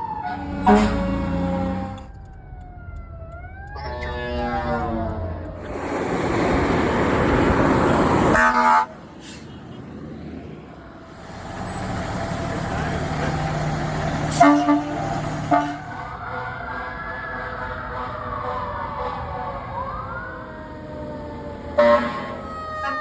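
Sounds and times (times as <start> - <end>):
siren wailing: 0.0 - 5.7, 10.7 - 23.0
truck engine: 0.0 - 23.0
fire truck horn toots: 0.1 - 2.0, 8.2 - 9.8, 11.4 - 19.6, 21.8 - 23.0.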